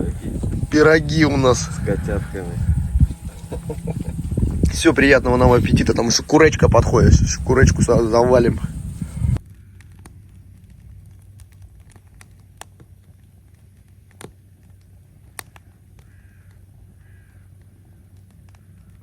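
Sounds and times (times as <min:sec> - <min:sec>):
low steady hum: 0:00.0 - 0:19.0
sharp clicks and crackles: 0:09.4 - 0:19.0.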